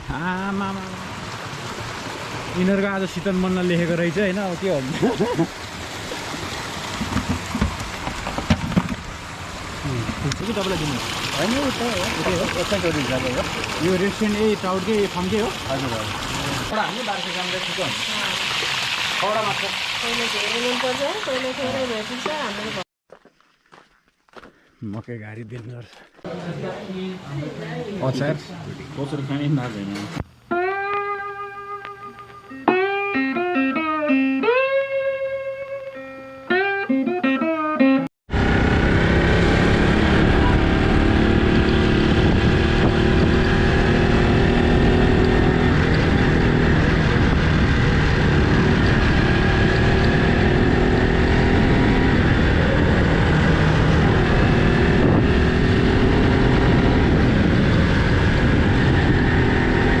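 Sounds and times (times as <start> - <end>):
plucked guitar notes: 30.5 - 38.1
motorcycle engine: 38.3 - 60.0
wind noise: 38.8 - 60.0.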